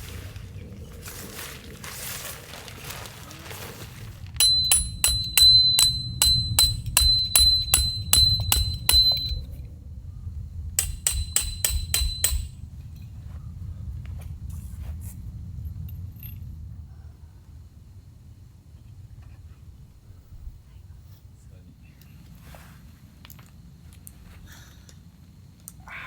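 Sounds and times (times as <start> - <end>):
hammer striking metal stake: 4.4 - 9.5, 10.8 - 12.6.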